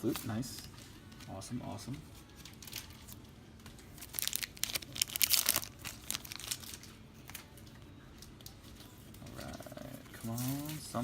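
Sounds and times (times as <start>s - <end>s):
foil wrapper crinkling and tearing: 2.2s - 9.2s, 10.2s - 11.0s.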